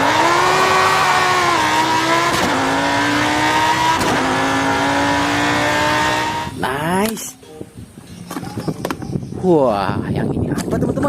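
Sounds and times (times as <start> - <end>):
race car engine at high revs: 0.0 - 6.6.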